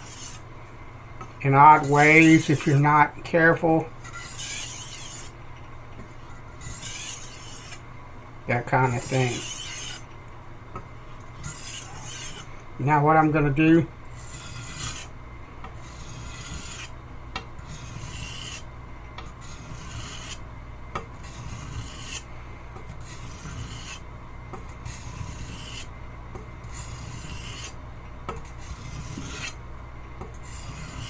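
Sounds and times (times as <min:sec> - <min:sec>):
knife scraping on water stone: 0:04.0 - 0:05.3, 0:06.6 - 0:07.8, 0:14.2 - 0:15.1, 0:17.6 - 0:18.6, 0:19.4 - 0:20.4, 0:22.9 - 0:24.0, 0:26.7 - 0:27.8, 0:28.4 - 0:29.6, 0:30.4 - 0:31.0.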